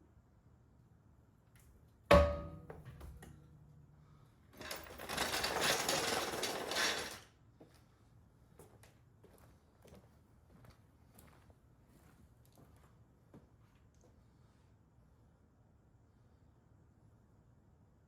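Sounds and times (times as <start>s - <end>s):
sharp metallic clank: 2.1s - 3.0s.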